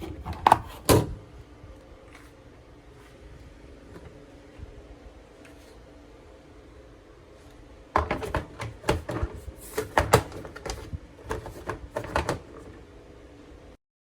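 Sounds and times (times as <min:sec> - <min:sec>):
plastic box clicking and knocking: 0:08.0 - 0:12.6.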